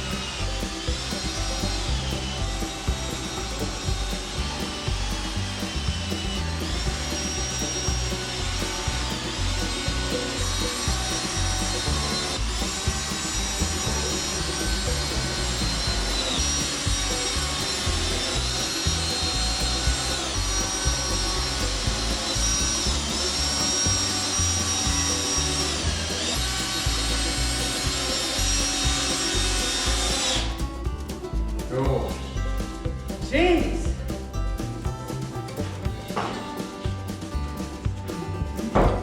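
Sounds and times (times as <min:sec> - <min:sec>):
power tool motor whining: 0:00.0 - 0:30.6
heavy rumble from work: 0:00.0 - 0:33.2, 0:33.9 - 0:39.0.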